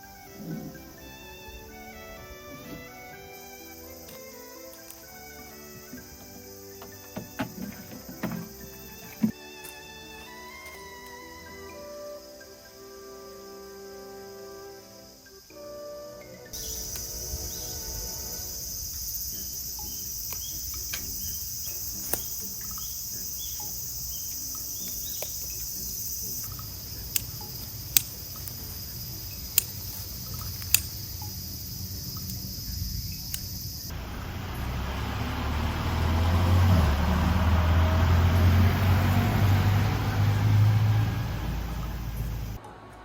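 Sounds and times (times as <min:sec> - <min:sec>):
high-pitched insect chorus: 0:00.0 - 0:42.6
sharp clicks: 0:19.8 - 0:32.5, 0:33.2 - 0:33.8.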